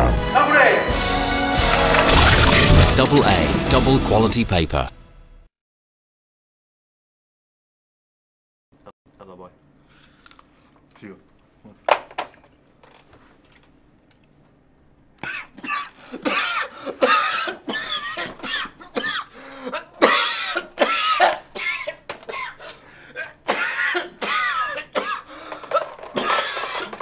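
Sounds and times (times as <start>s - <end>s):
person coughing hard: 15.2s - 27.0s.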